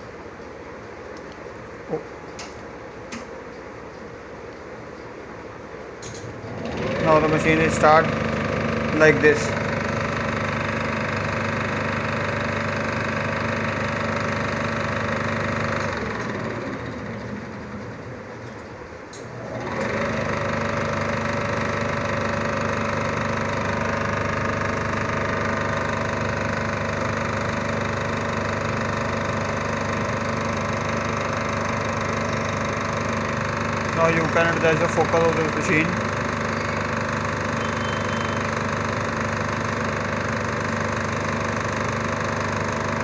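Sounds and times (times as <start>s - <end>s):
film projector whir and clatter: 0.0s - 43.0s.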